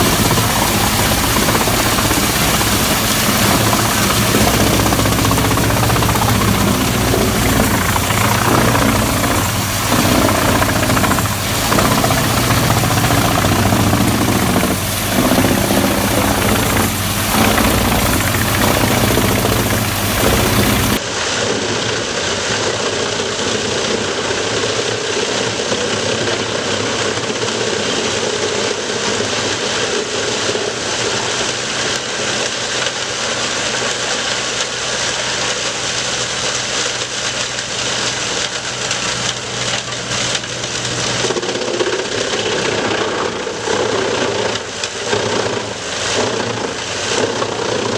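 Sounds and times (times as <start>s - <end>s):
engine low hum: 0.0s - 21.0s
wood chipper running noisily: 0.0s - 47.9s.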